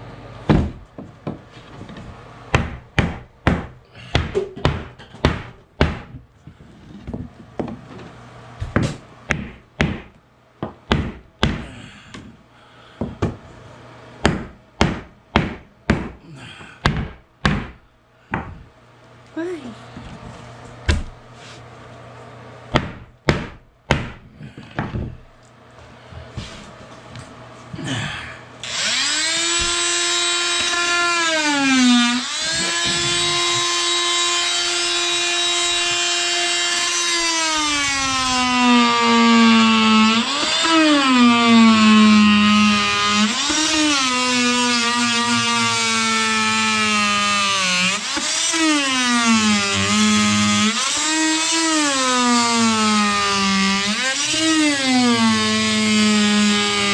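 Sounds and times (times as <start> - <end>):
electric power saw cutting wood: 28.6 - 56.9.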